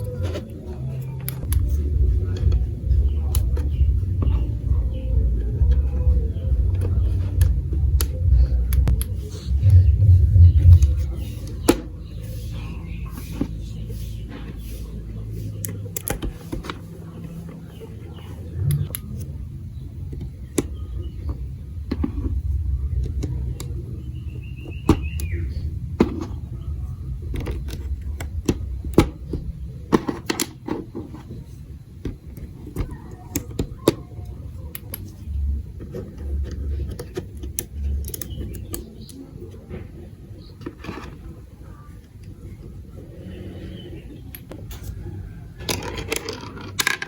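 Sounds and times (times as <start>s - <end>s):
steady low rumble: 1.3s - 15.6s, 16.9s - 30.0s, 34.0s - 40.6s
marbles clicking on plastic pieces: 45.6s - 47.0s.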